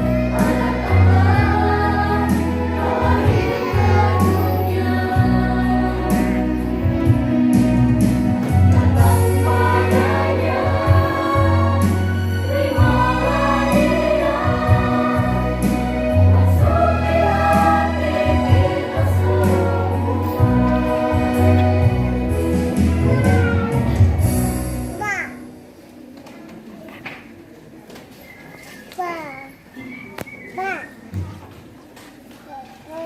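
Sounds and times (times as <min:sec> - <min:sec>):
group singing a praise song: 0:00.0 - 0:23.2
sustained bass accompaniment: 0:00.0 - 0:25.0.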